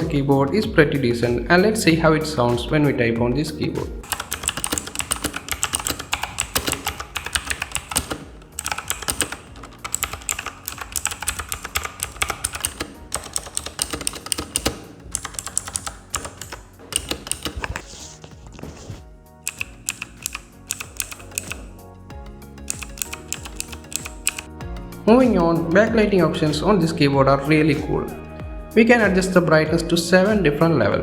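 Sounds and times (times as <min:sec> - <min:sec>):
mechanical keyboard typing: 0:04.0 - 0:18.9, 0:19.5 - 0:21.8, 0:22.7 - 0:24.5.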